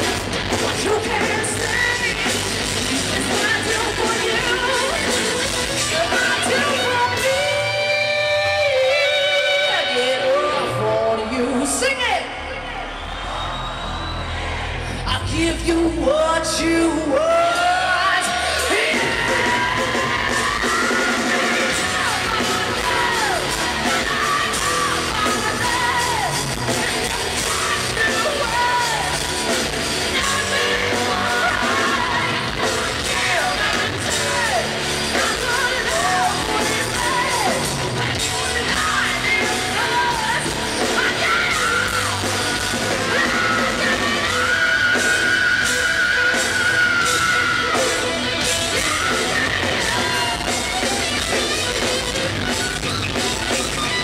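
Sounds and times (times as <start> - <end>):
live rock band playing: 0.0 - 11.6, 14.3 - 54.0
high voice singing and yelling: 14.4 - 54.0.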